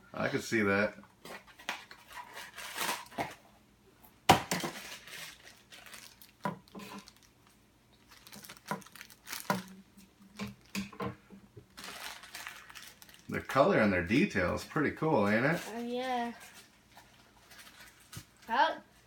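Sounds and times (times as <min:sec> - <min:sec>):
packaging crinkling and tearing: 0:01.6 - 0:03.4, 0:04.6 - 0:09.8, 0:11.7 - 0:13.6.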